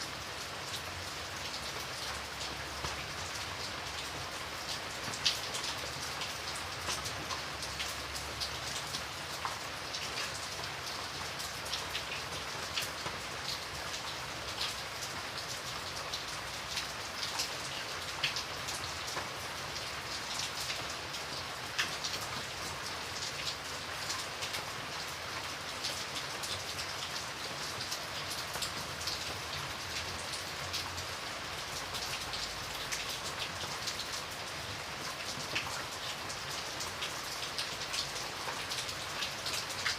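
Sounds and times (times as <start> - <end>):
raindrops clicking on surface: 35.0 - 39.9.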